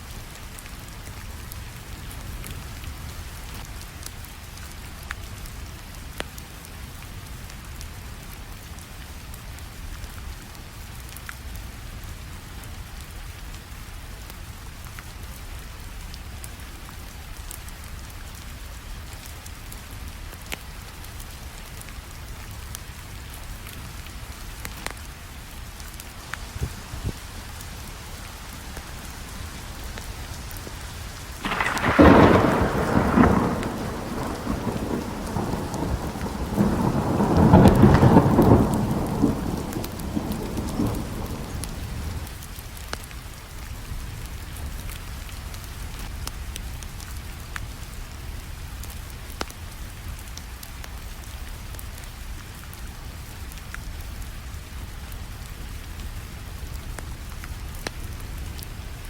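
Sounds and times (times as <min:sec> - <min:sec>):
steady rainfall: 0:00.0 - 0:59.0
wood fire crackling: 0:20.3 - 0:59.0
thunder rumbling: 0:26.4 - 0:42.3.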